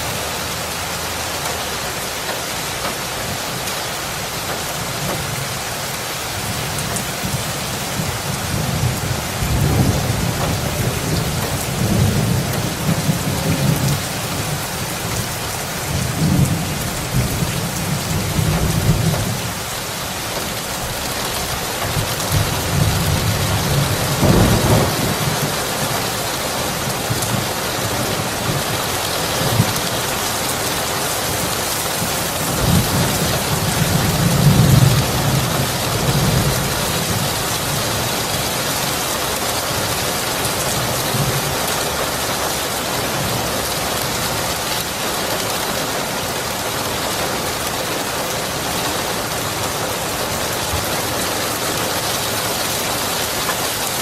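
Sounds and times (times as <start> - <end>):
heavy rain hissing: 0.0 - 54.0
thunder rumbling: 6.4 - 19.7, 20.3 - 41.6.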